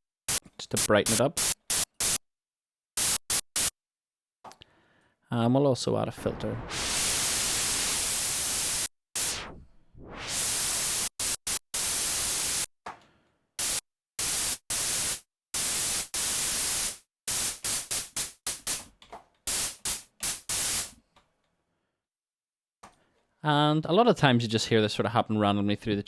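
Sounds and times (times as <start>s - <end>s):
filtered synthesizer noise bursts: 6.1s - 12.7s.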